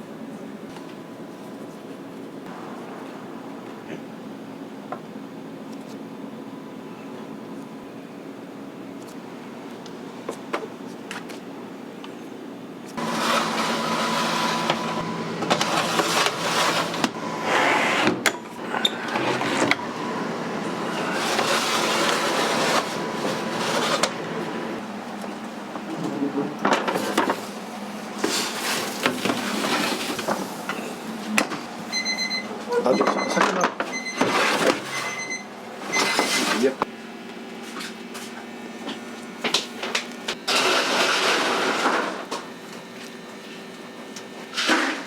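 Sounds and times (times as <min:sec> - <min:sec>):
steady machine hum: 0:00.0 - 0:10.2, 0:11.5 - 0:32.6.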